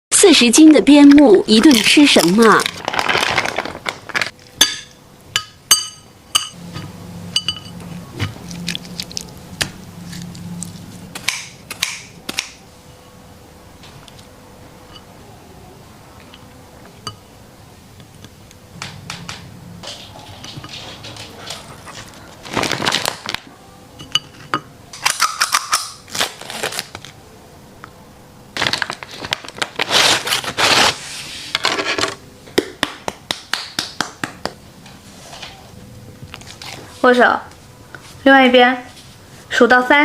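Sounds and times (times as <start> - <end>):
food packaging crinkling and rustling: 1.6 - 4.6, 8.2 - 11.5, 20.0 - 23.5, 26.0 - 27.2, 28.6 - 31.0, 36.3 - 37.0.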